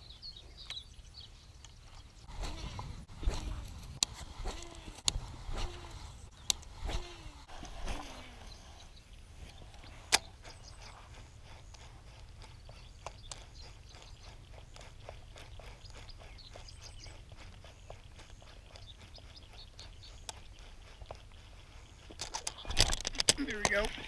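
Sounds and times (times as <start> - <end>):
fishing reel clicking: 2.3 - 7.8.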